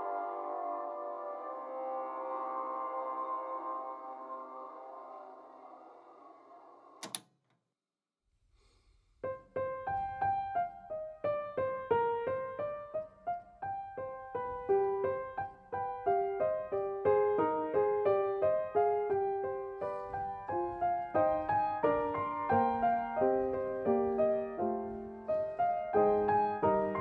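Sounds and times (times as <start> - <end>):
gentle piano melody: 0.0 - 4.2, 9.2 - 27.0.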